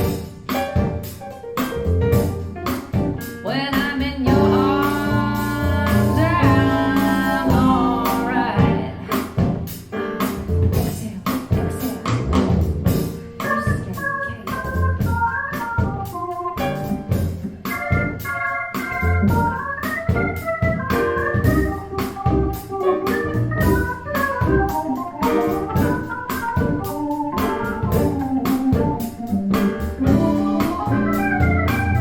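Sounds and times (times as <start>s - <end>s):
steady drum beat: 0.0s - 32.0s
sustained organ-like chords: 4.3s - 9.0s, 17.7s - 32.0s.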